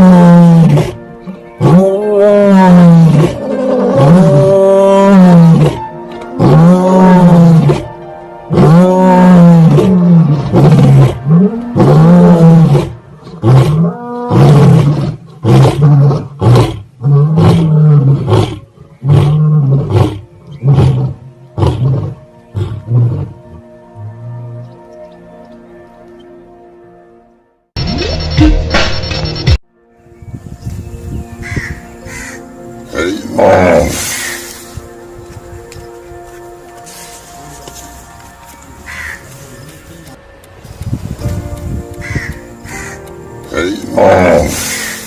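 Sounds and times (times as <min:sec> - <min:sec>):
animal calling in arching moans: 0:01.6 - 0:05.8, 0:06.4 - 0:07.9, 0:08.5 - 0:24.8, 0:32.9 - 0:34.6, 0:43.5 - 0:45.0.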